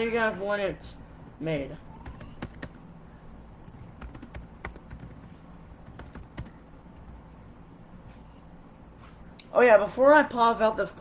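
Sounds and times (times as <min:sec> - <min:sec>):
low steady hum: 0:00.0 - 0:11.0
keyboard and mouse clicks: 0:03.6 - 0:06.6.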